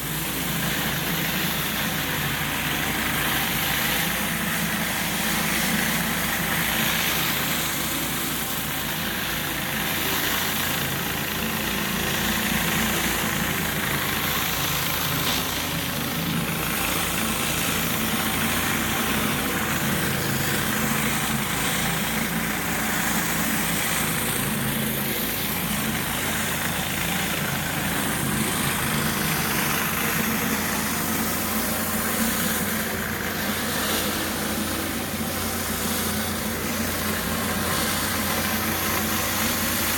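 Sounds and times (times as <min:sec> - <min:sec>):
constant hiss: 0:00.0 - 0:39.9
pressure washer engine running: 0:00.0 - 0:39.9.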